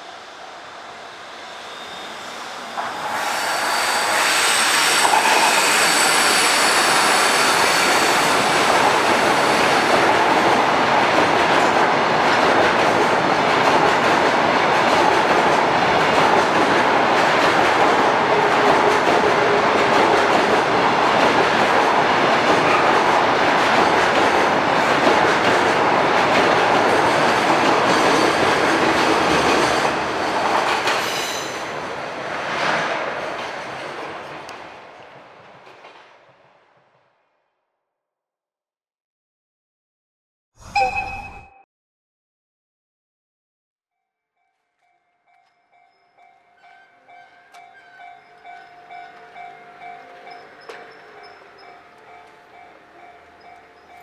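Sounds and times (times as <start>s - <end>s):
high squealing from train wheels: 0.0s - 10.1s, 26.7s - 31.9s, 45.7s - 54.0s
freight train wheel and rail noise: 0.0s - 37.2s, 45.3s - 54.0s.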